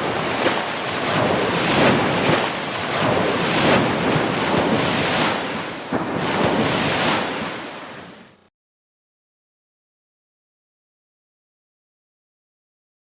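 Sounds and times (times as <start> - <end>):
ocean waves washing in: 0.0 - 8.5.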